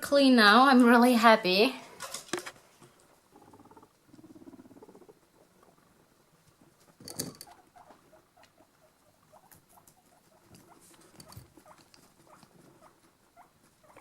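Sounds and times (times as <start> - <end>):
guinea pig squeaking: 3.3 - 5.2, 6.8 - 14.0.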